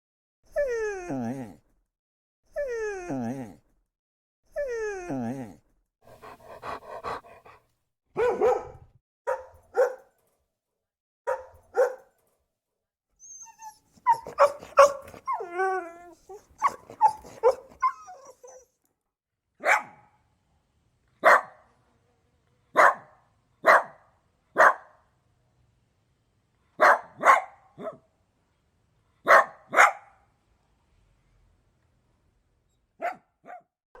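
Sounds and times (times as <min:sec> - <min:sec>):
dog whining: 0:06.1 - 0:07.6, 0:13.2 - 0:18.8
dog barking: 0:06.1 - 0:10.2, 0:11.3 - 0:12.2, 0:14.0 - 0:15.4, 0:16.6 - 0:18.6, 0:19.6 - 0:20.2, 0:21.2 - 0:21.7, 0:22.8 - 0:25.0, 0:26.8 - 0:28.1, 0:29.2 - 0:30.2, 0:33.0 - 0:34.0.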